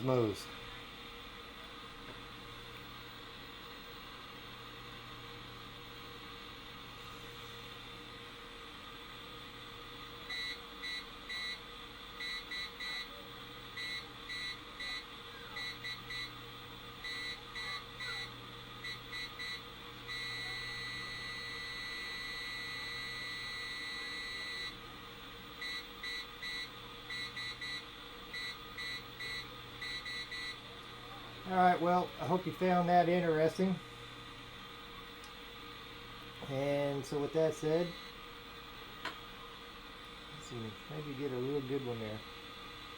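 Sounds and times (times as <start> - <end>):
morse code beeping tone: 12.2 - 13.1, 13.8 - 15.0, 15.6 - 16.3, 17.0 - 24.7, 25.6 - 30.6.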